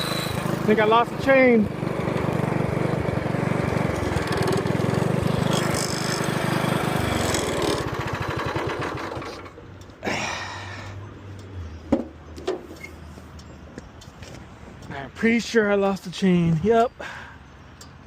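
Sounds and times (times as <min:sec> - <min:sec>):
small engine running: 0:00.0 - 0:09.6.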